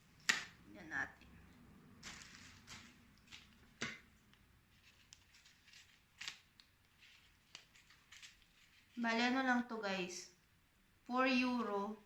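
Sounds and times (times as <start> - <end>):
package rustling: 2.0 - 4.1, 4.7 - 9.0.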